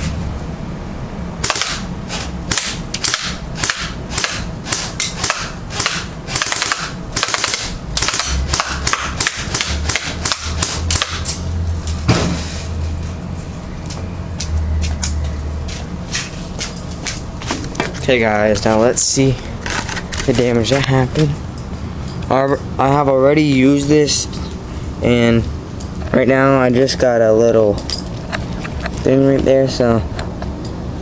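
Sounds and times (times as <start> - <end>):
airsoft gun shots: 1.4 - 1.9, 2.5 - 11.3.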